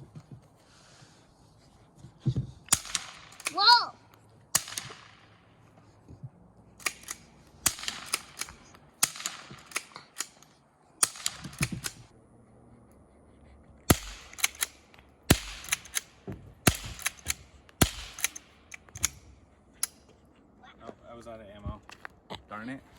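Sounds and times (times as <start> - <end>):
rifle shots popping: 2.7 - 3.7, 4.5 - 5.4, 6.8 - 10.4, 11.0 - 12.1, 13.9 - 19.2.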